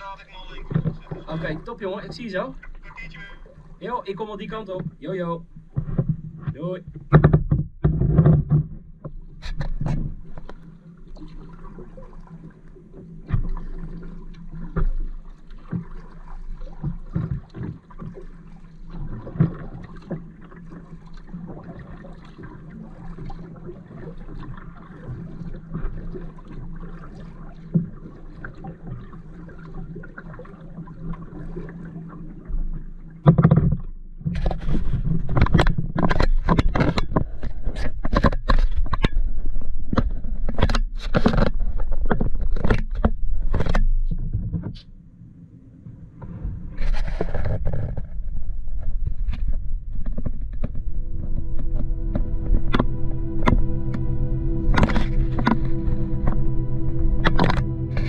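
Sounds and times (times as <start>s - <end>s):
paddle strokes and splashes: 0.0s - 58.0s
knocks on kayak hull: 6.9s - 8.8s.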